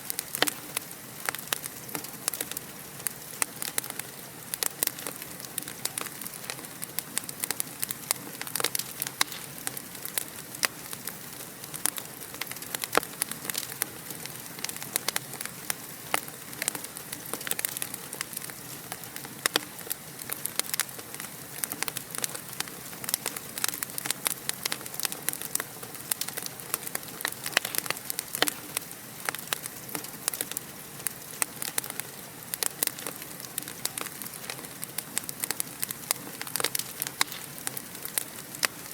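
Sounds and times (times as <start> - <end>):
fireplace fire crackling: 0.0 - 38.9.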